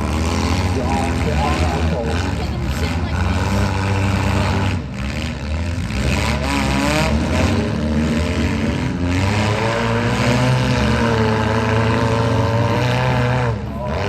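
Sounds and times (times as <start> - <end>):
car engines revving: 0.0 - 14.0.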